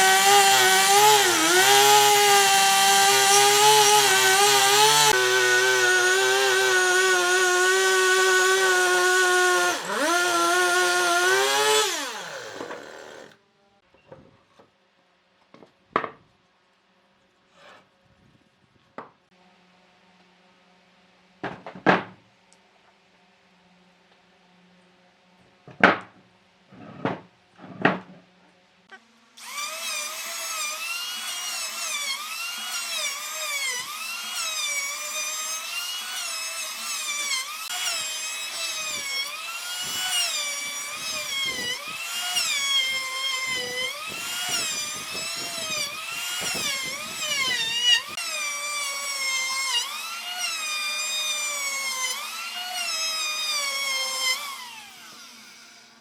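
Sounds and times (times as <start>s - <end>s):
power tool whining: 0.0s - 13.4s, 29.4s - 56.0s.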